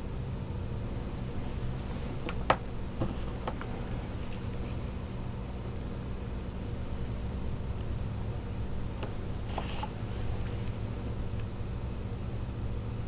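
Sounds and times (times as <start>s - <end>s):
steady low hum: 0.0s - 13.0s
faint scratching: 1.0s - 2.4s, 3.0s - 6.3s, 9.0s - 11.2s.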